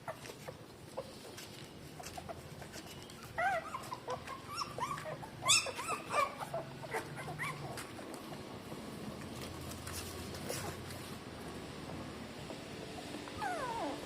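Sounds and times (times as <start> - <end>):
puppies whimpering and squeaking: 0.0 - 8.4, 10.3 - 11.0, 12.4 - 14.0.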